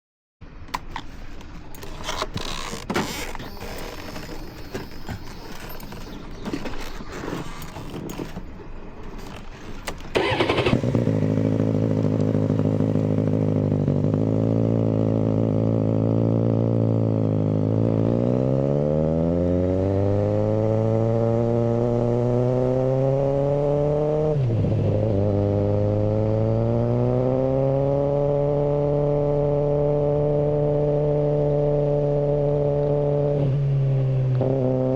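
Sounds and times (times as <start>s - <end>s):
motorcycle engine idling: 10.1s - 16.3s.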